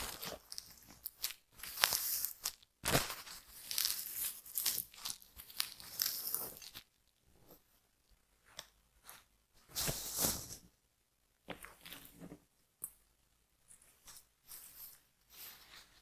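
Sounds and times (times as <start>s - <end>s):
scratching and rustling in hair: 9.7s - 10.6s, 14.0s - 16.0s.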